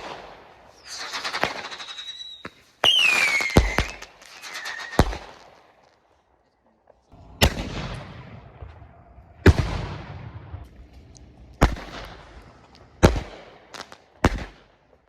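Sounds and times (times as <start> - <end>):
fireworks bangs: 0.0 - 5.8, 7.1 - 15.0
small firework pops: 0.0 - 6.0, 10.6 - 15.0.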